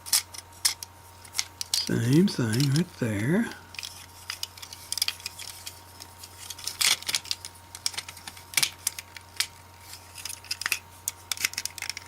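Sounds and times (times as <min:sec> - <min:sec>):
plastic toy parts clicking: 0:00.0 - 0:02.9, 0:06.5 - 0:12.0.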